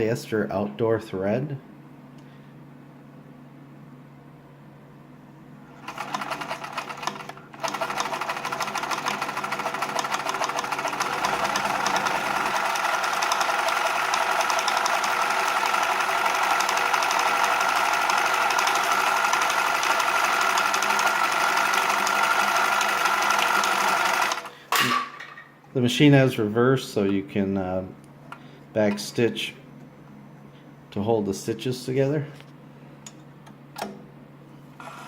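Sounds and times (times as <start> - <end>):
sewing machine stitching: 5.8 - 24.5.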